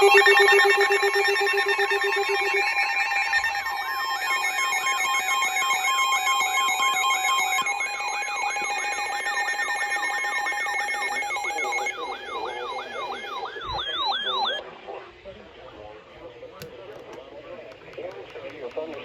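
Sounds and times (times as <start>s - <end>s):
siren-like sweeping alarm: 0.0s - 14.6s.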